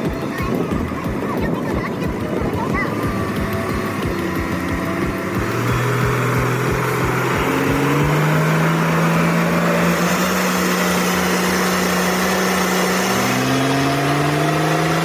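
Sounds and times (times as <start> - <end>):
low regular thudding: 0.0 - 10.7
heavy truck engine under load: 0.0 - 15.0.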